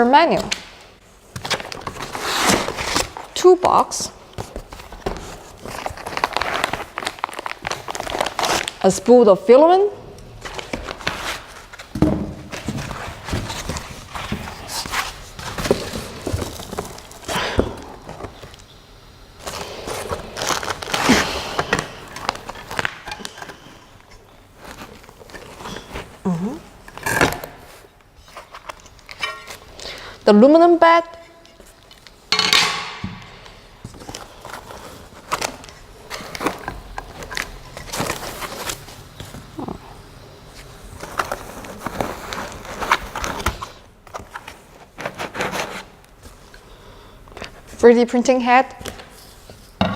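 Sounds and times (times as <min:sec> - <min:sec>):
packing rustling and scraping: 0:01.2 - 0:03.6, 0:04.3 - 0:08.9, 0:10.4 - 0:18.5, 0:19.4 - 0:29.8, 0:33.7 - 0:39.8, 0:40.4 - 0:47.8
loud scraping rush of packing: 0:01.9 - 0:03.2, 0:44.6 - 0:46.4.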